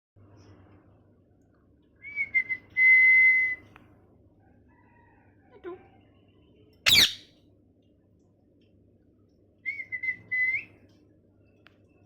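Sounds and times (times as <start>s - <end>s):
parakeet screeching: 6.9s - 7.3s
parakeet whistling: 6.9s - 7.3s.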